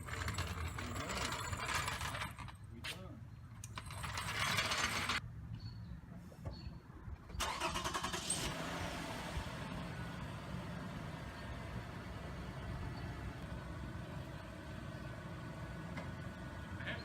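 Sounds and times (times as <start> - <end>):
engine cranking: 0.0 - 2.7, 3.5 - 5.2, 7.4 - 8.6.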